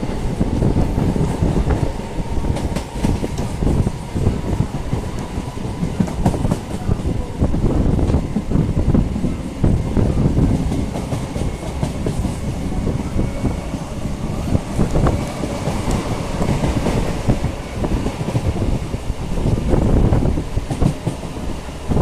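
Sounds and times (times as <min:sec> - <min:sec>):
electric train rumbling: 0:00.0 - 0:22.0.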